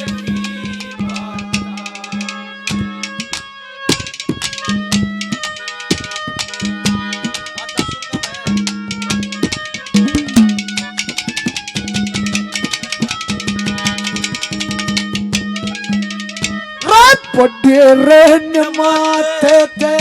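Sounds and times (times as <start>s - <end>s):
held melodic notes: 0.0s - 20.0s
hand drum fast rhythm: 3.9s - 16.5s
bending bass drum stroke: 10.0s - 10.7s.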